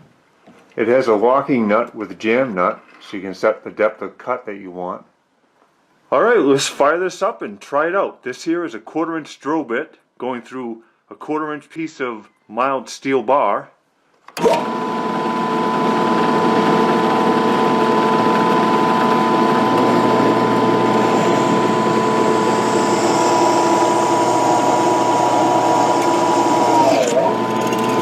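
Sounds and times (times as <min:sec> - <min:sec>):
drill cutting steel: 0:14.4 - 0:28.0
drill press motor whine: 0:14.4 - 0:28.0.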